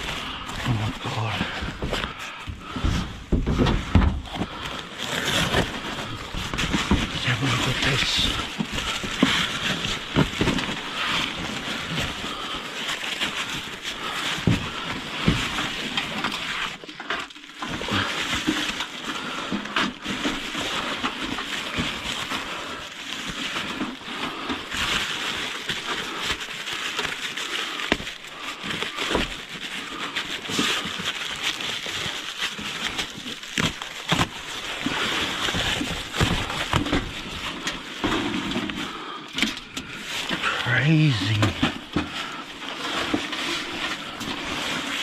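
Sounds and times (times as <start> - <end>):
packaging rustling and crinkling: 0.0 - 45.0
items knocking and clunking: 1.3 - 12.6, 13.2 - 22.5, 27.8 - 40.4.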